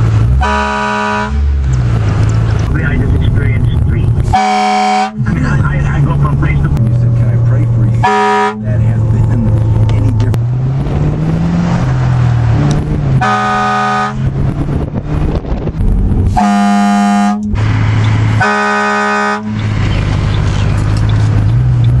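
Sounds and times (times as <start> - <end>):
low engine hum: 0.0 - 22.0
air horn blasts: 0.4 - 1.4, 4.3 - 5.2, 8.0 - 8.7, 13.2 - 14.2, 16.3 - 17.6, 18.4 - 19.6.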